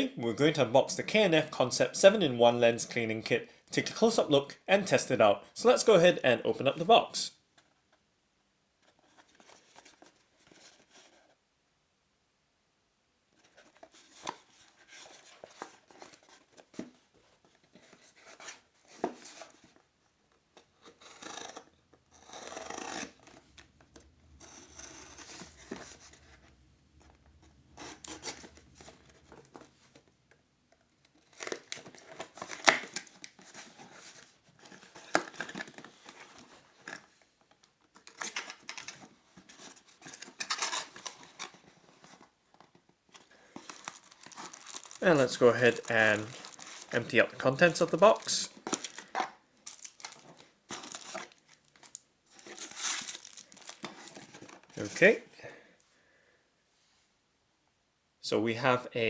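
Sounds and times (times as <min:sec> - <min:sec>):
cardboard and tape tearing: 0:20.6 - 0:26.5, 0:27.7 - 0:29.7, 0:31.2 - 0:37.0, 0:38.0 - 0:42.2, 0:43.6 - 0:55.0.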